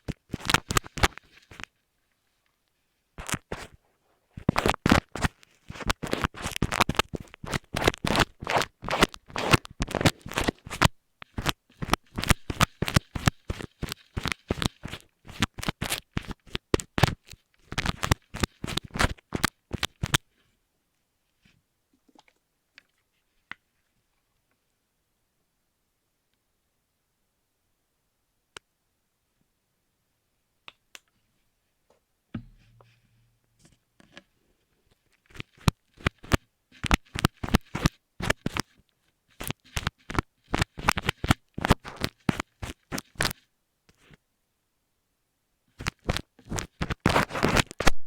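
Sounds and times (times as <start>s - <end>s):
scratching on microphone: 0.0s - 1.7s, 3.2s - 20.4s, 35.0s - 43.4s, 45.8s - 48.0s.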